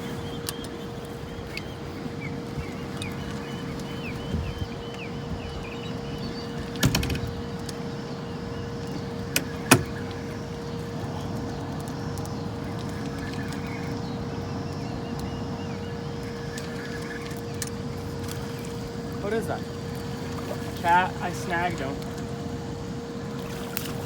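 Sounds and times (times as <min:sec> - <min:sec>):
constant hum: 0:00.0 - 0:24.0
water rushing: 0:16.2 - 0:24.0.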